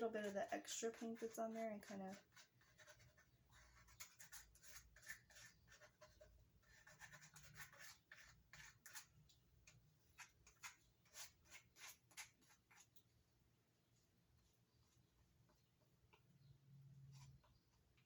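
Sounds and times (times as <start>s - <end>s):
palette knife scraping canvas: 0.0s - 9.2s, 10.1s - 13.0s.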